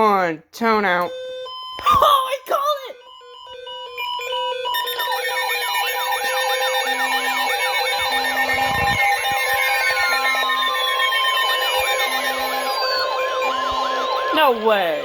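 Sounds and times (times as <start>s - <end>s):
siren-like warble: 3.0s - 15.0s
steady high tone: 3.6s - 15.0s.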